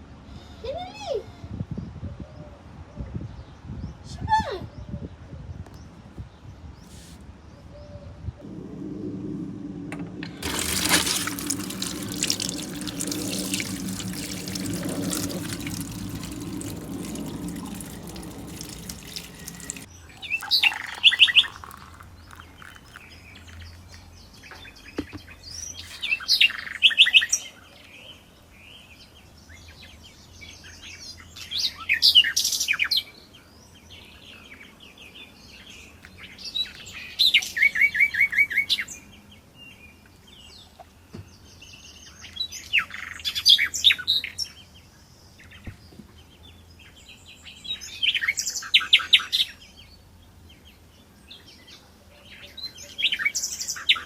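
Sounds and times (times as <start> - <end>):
steady rushing noise: 8.4 - 11.1
low hum: 8.4 - 19.9.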